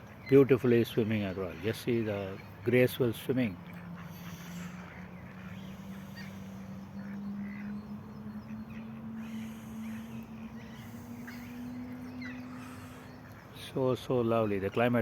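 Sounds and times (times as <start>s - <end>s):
geese and ducks calling: 0.0s - 15.0s
low hum rising in pitch: 3.8s - 13.4s.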